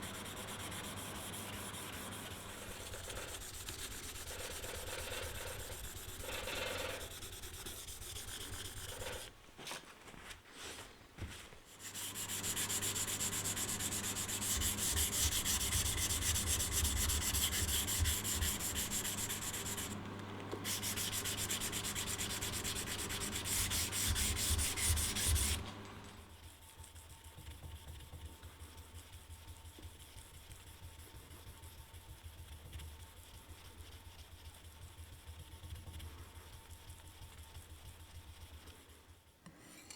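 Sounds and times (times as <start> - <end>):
abrasive sanding: 0.0 - 9.3, 11.7 - 20.0, 20.6 - 25.6.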